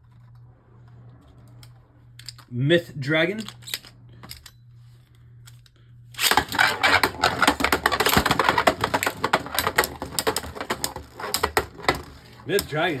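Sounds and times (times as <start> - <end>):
plastic spinning tops clashing: 6.2 - 13.0.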